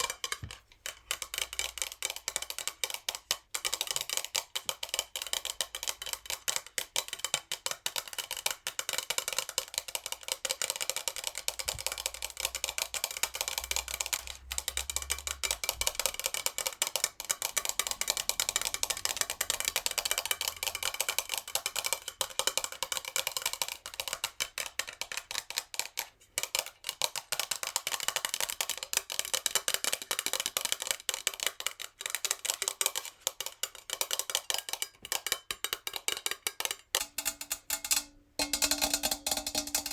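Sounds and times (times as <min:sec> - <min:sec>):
fingernails tapping on metal jar: 0:32.4 - 0:39.9.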